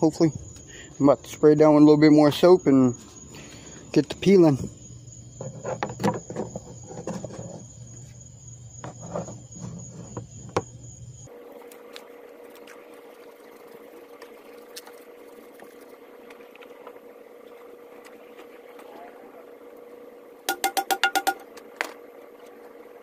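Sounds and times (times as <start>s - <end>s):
faint steady hum: 0.0s - 23.0s
knocks and scrapes on tire: 5.4s - 10.9s.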